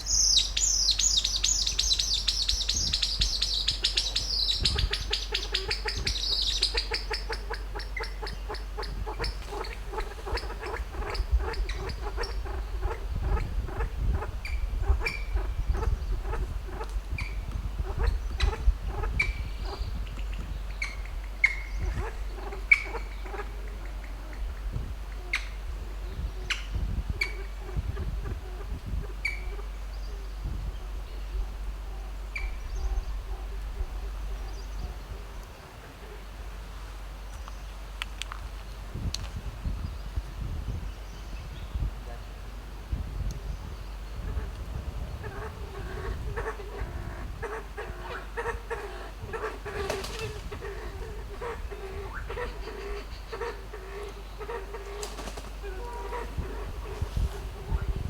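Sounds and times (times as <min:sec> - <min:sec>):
pheasant clicking calls: 0:00.0 - 0:30.4, 0:44.2 - 0:58.0.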